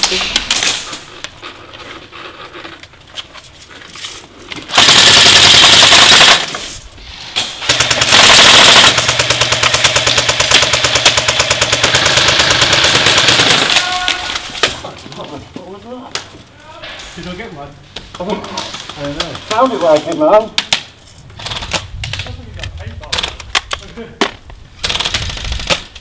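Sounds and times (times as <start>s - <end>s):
airsoft guns firing rapidly: 4.7s - 6.6s, 7.6s - 14.8s, 24.8s - 25.9s.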